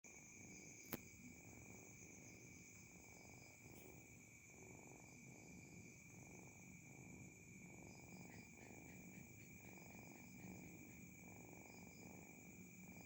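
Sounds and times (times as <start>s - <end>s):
cat purring: 0.3s - 13.0s.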